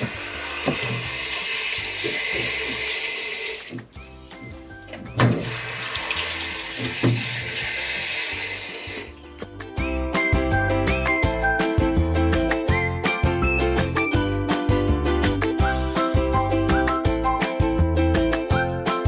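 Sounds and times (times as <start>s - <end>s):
water running from a tap: 0.0s - 9.6s.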